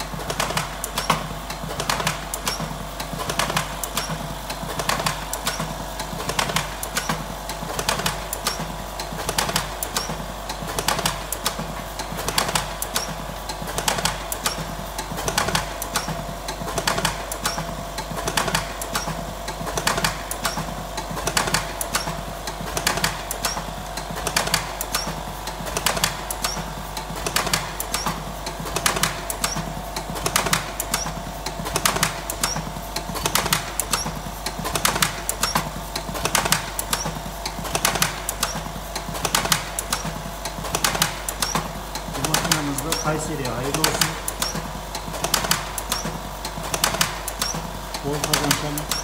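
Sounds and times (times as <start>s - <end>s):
machine mechanical clacking: 0.0s - 49.0s
motor hum: 0.0s - 49.0s.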